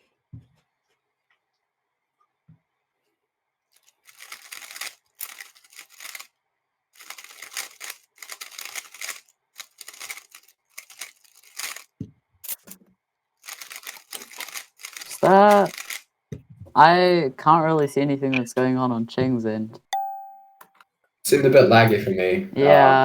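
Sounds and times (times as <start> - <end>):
plastic puzzle cube clicking: 3.8 - 6.3, 7.0 - 12.8, 13.4 - 16.0.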